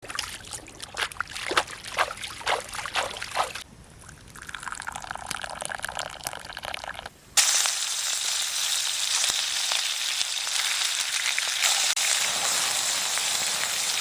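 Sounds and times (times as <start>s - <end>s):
water trickling and splashing: 0.0s - 10.4s.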